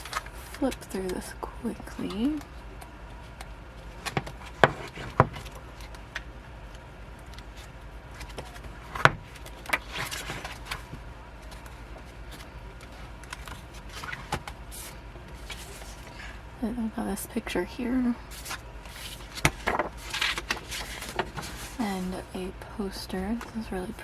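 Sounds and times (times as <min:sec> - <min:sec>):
pages flipping: 0:00.0 - 0:00.7, 0:04.0 - 0:16.2, 0:18.3 - 0:21.8
paper rustling: 0:00.0 - 0:01.2, 0:04.0 - 0:06.2, 0:07.2 - 0:16.3, 0:18.3 - 0:22.2.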